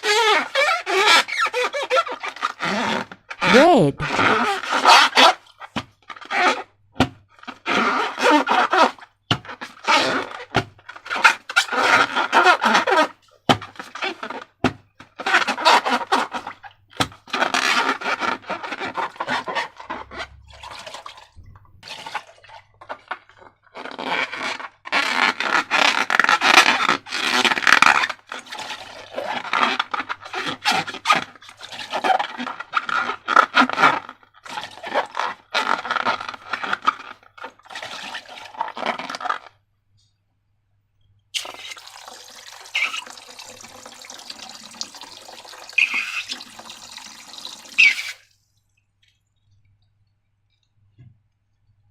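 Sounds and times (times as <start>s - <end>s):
slime squelching by hand: 41.4s - 49.6s.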